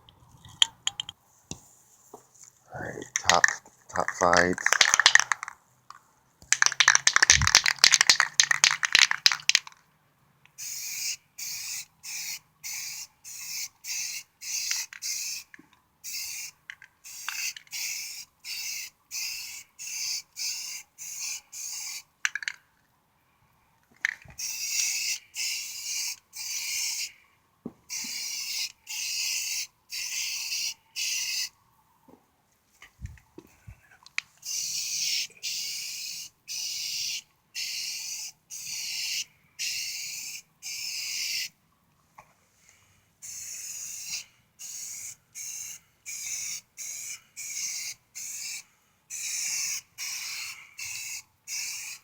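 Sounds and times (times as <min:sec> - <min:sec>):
spray can rattling: 0:03.1 - 0:05.6, 0:06.4 - 0:09.8, 0:10.6 - 0:22.6, 0:24.0 - 0:27.1, 0:27.9 - 0:31.5, 0:34.4 - 0:41.5, 0:43.2 - 0:52.0
spray can hissing bursts: 0:04.6 - 0:05.4, 0:06.5 - 0:09.7, 0:10.6 - 0:22.1, 0:24.4 - 0:27.1, 0:27.9 - 0:31.5, 0:34.4 - 0:41.5, 0:43.2 - 0:52.0.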